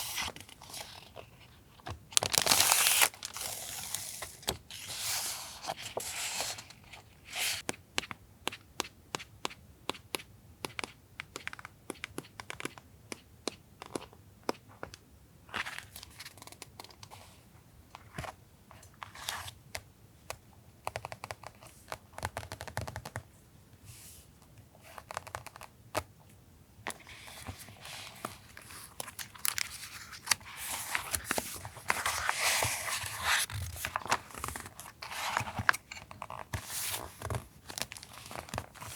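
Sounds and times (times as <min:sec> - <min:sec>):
paper and plastic crinkling: 0:00.0 - 0:04.9, 0:27.3 - 0:38.9.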